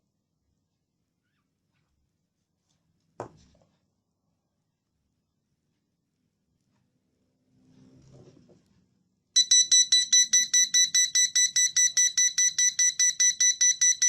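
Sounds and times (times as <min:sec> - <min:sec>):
smoke alarm rapid shrill beeping: 0:09.4 - 0:14.0.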